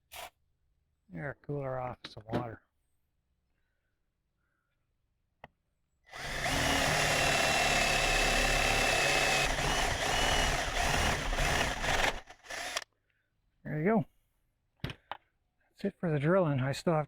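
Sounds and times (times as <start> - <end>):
electric drill boring into wood: 6.1 - 12.8.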